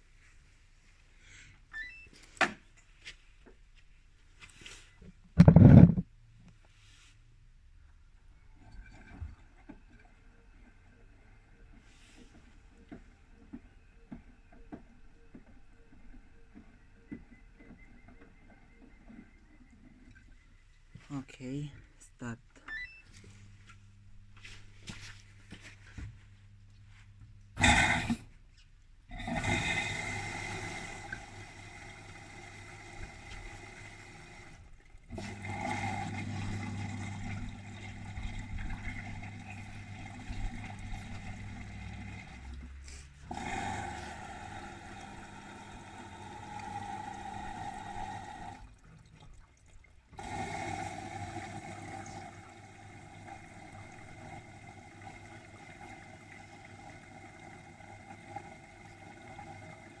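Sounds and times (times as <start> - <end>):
washing machine motor hum: 0.0 - 2.8, 3.4 - 6.4, 7.2 - 60.0
water running into drum: 5.4 - 6.1, 8.5 - 11.1, 24.8 - 28.4, 29.1 - 60.0.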